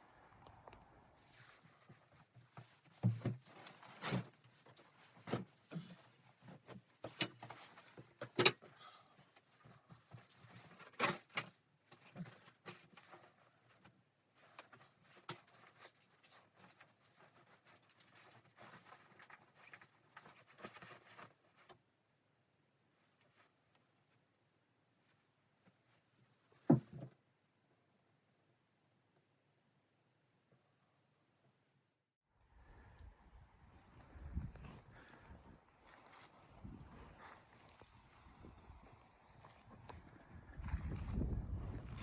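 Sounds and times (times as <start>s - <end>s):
soft rustling: 1.0s - 21.8s, 22.9s - 27.1s
camping gear knocking and clattering: 1.2s - 21.8s, 26.5s - 27.2s.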